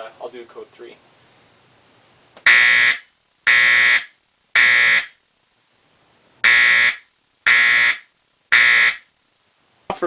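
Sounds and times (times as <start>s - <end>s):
fire alarm horn blasts: 2.5s - 5.2s, 6.4s - 9.1s.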